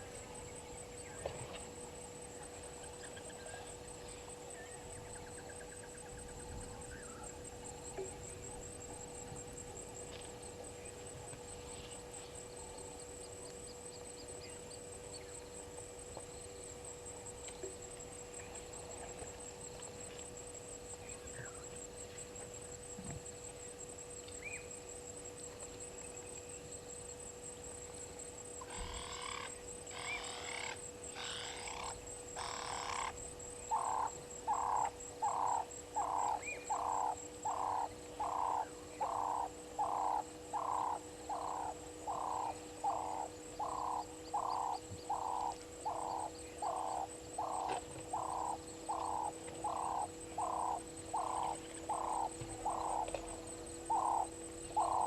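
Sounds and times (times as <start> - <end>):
frog croaking: 28.6 - 55.0.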